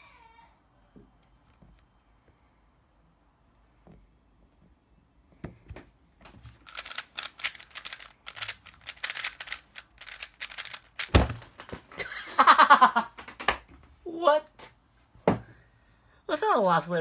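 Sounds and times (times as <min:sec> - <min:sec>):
rapid plastic cube clicking: 0:06.6 - 0:11.7.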